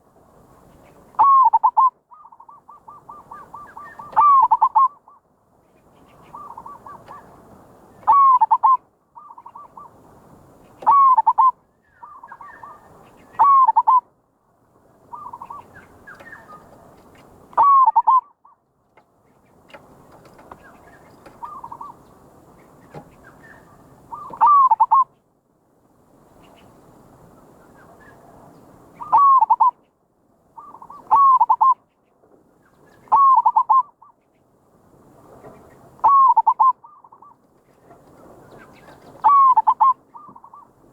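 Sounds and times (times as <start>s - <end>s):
dove cooing: 1.2s - 5.1s, 6.3s - 7.4s, 8.0s - 10.0s, 10.8s - 14.0s, 15.1s - 17.0s, 17.6s - 18.3s, 20.2s - 22.0s, 22.9s - 25.1s, 29.0s - 29.8s, 30.6s - 31.8s, 33.0s - 34.0s, 36.0s - 37.4s, 38.2s - 40.7s.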